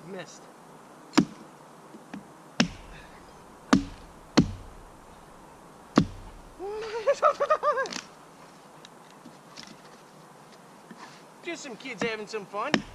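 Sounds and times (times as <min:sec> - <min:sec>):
axe chopping wood: 0:01.1 - 0:01.4, 0:02.6 - 0:05.4, 0:06.0 - 0:06.6, 0:12.7 - 0:12.9.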